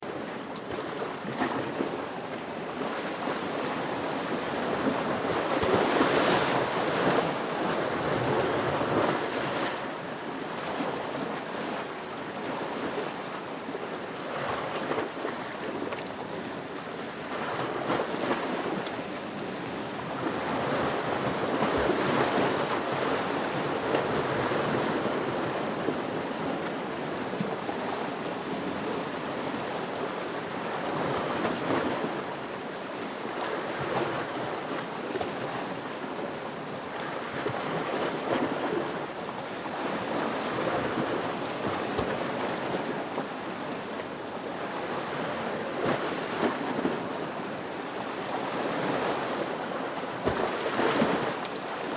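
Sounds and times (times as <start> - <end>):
ocean waves breaking: 2.7 - 16.1, 47.9 - 51.9.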